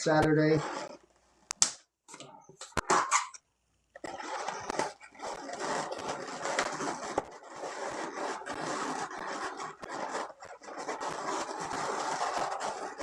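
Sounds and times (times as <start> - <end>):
balloons rubbing and squeaking: 0.0 - 1.1, 4.0 - 13.0.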